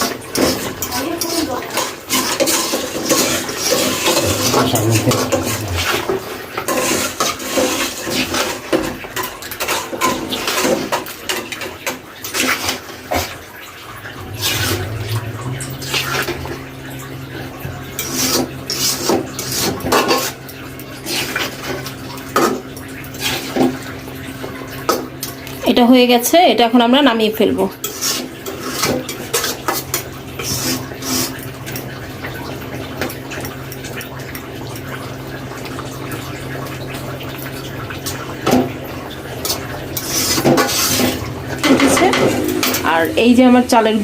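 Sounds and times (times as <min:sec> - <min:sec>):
metal spoon scraping a pan: 0:00.4 - 0:13.3, 0:27.8 - 0:31.4, 0:39.4 - 0:44.0
low steady hum: 0:03.9 - 0:06.4, 0:13.7 - 0:17.8, 0:41.0 - 0:44.0.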